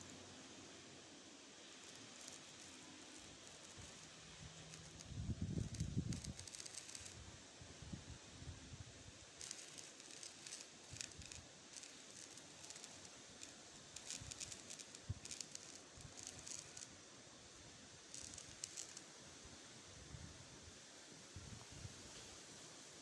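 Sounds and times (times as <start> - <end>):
faint background hiss: 0.0 - 23.0
soft rustles and crackles: 1.7 - 7.2, 9.4 - 17.0, 18.1 - 19.1.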